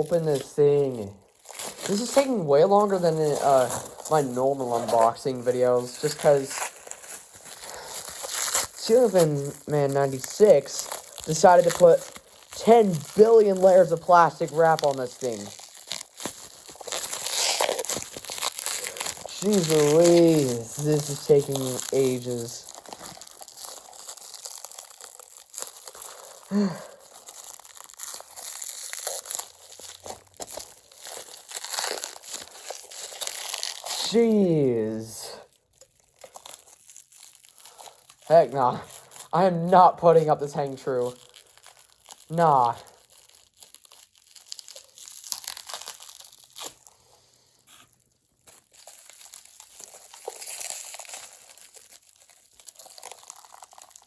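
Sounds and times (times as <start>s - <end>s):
plastic wrap crinkling and tearing: 0.0s - 54.0s
person grunting: 26.5s - 27.0s.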